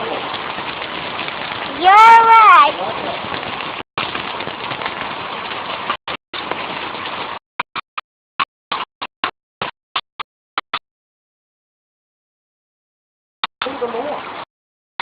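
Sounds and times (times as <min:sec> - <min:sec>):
heavy downpour hissing: 0:00.0 - 0:07.4, 0:13.7 - 0:14.4.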